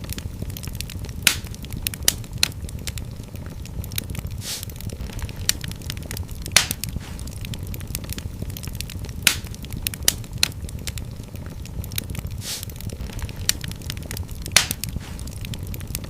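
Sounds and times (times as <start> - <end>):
fire flames rumbling: 0.0 - 16.0
wood fire crackling and popping: 0.0 - 16.0
short hiss: 4.4 - 4.7, 12.4 - 12.7.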